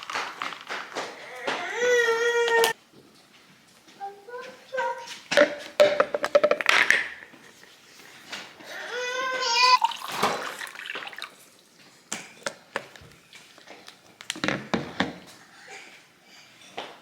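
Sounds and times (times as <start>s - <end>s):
cups knocking: 5.4s - 7.2s
toddler squealing: 8.8s - 9.9s
water pouring into a cup: 9.7s - 11.7s.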